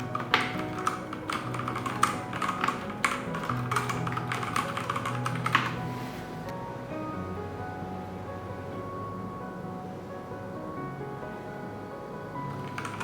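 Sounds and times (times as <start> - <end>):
mechanical keyboard key clacks: 0.0 - 5.8, 12.6 - 13.0
background music: 0.0 - 13.0.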